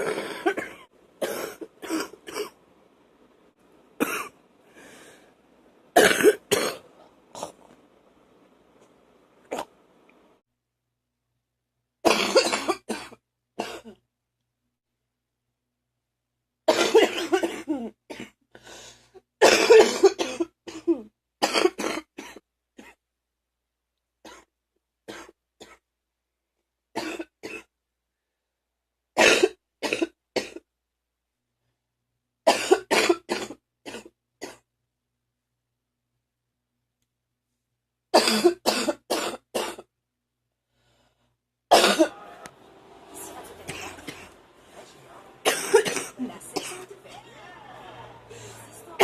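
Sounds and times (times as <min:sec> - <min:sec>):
person wet phlegmy cough: 0:06.0 - 0:06.8, 0:12.1 - 0:14.0, 0:45.4 - 0:46.7.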